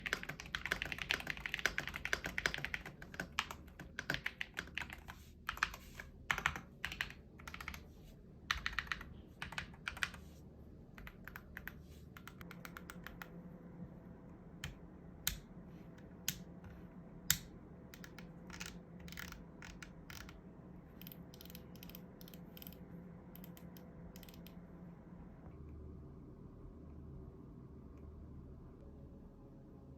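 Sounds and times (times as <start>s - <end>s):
keyboard typing: 0.0s - 7.9s, 8.5s - 10.3s, 11.0s - 13.4s, 16.2s - 20.4s, 21.0s - 22.8s
faint steady hum: 0.0s - 29.9s.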